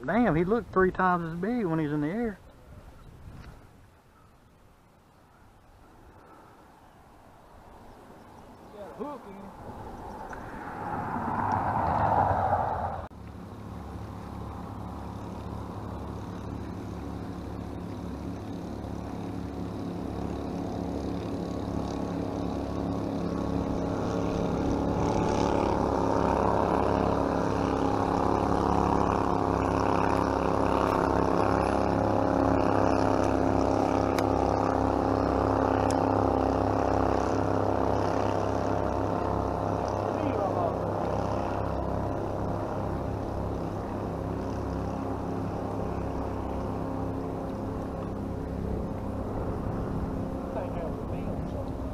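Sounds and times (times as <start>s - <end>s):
motorboat engine running: 13.1s - 51.9s.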